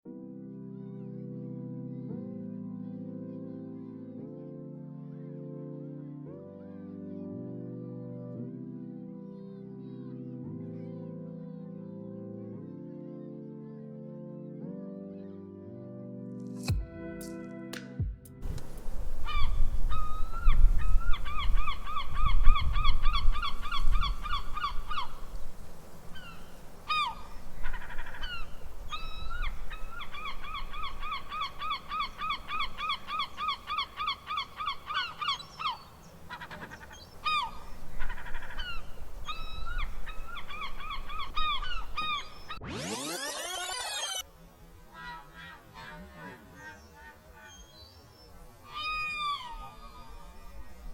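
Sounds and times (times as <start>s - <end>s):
wind rumble on microphone: 18.4s - 31.6s
gull yelping calls: 19.2s - 25.4s, 26.2s - 44.2s, 48.7s - 50.5s.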